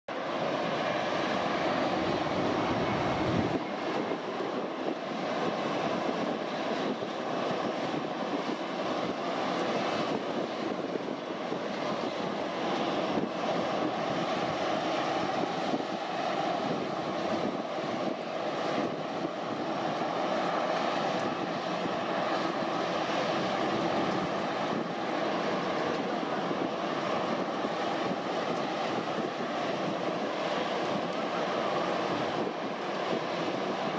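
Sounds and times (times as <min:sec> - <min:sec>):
jet engines whining: 0:00.1 - 0:33.9.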